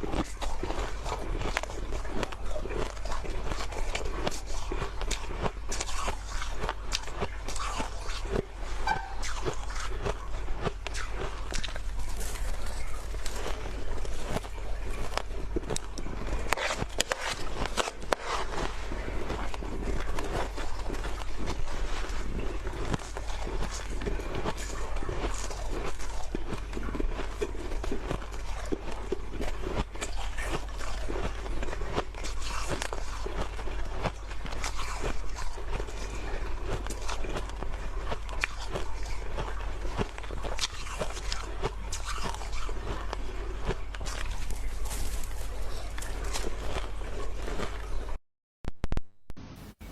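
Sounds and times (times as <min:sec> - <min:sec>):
ice being bitten and chewed: 0:00.0 - 0:48.2.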